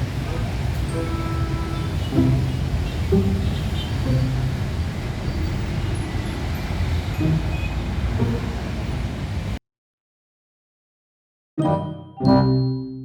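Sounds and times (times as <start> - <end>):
heavy vehicle engine rumble: 0.0 - 9.6
road noise: 0.0 - 9.6.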